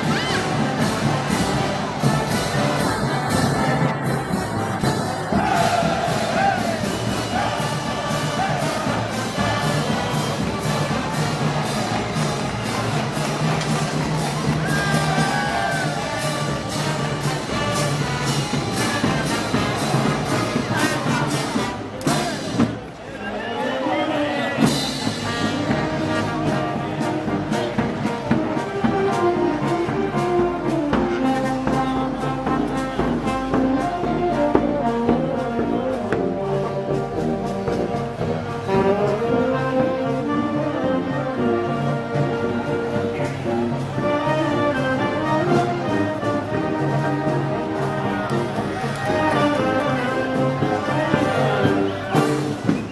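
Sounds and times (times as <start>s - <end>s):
drum and cymbal strikes: 0.0s - 23.0s, 24.6s - 40.2s
percussion beat: 0.0s - 23.0s, 24.6s - 52.9s
brass band playing march: 0.0s - 52.9s.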